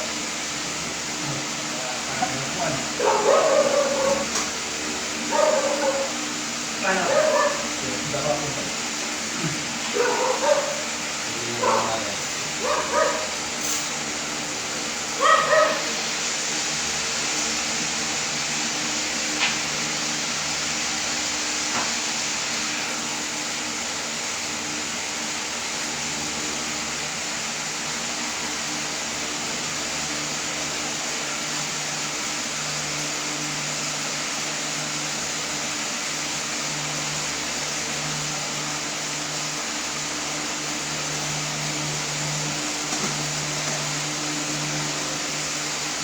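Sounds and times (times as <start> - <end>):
background hiss and hum: 0.0 - 46.0
dog barking: 3.0 - 4.3, 5.3 - 6.2, 7.0 - 7.7, 9.9 - 10.9, 11.6 - 12.0, 12.6 - 13.4, 15.2 - 16.0.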